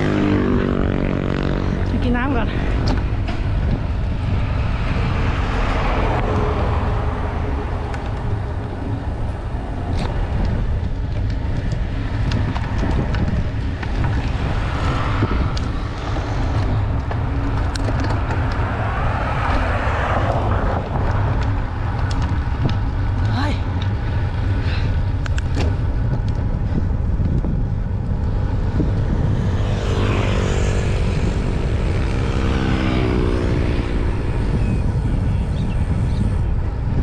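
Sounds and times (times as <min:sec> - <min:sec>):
road and tyre noise: 0:00.0 - 0:37.0
wind buffeting microphone: 0:00.0 - 0:37.0.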